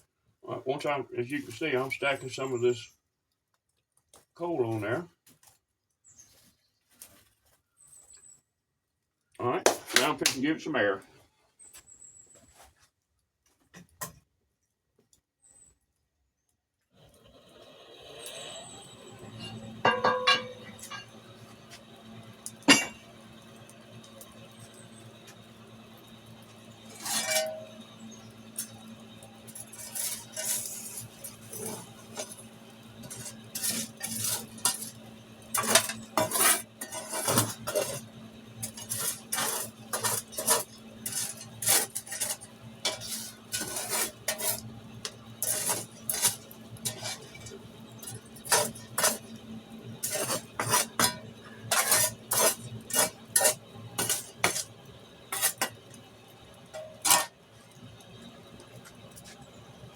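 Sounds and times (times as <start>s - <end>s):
steady low hum: 18.5s - 59.9s
metal tools clinking in forge: 19.3s - 25.4s, 26.0s - 49.4s, 50.0s - 54.7s, 56.7s - 57.3s.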